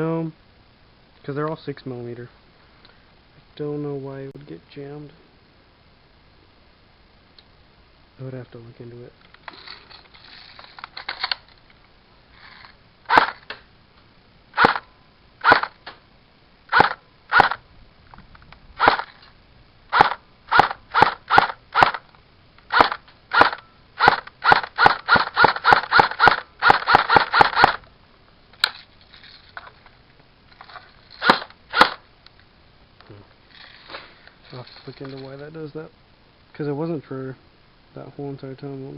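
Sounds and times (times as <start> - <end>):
airsoft gun shots: 13.1 - 13.4, 14.6 - 14.8, 15.4 - 15.8, 16.7 - 17.6, 18.8 - 19.1, 19.9 - 22.0, 22.7 - 27.8, 31.2 - 32.0.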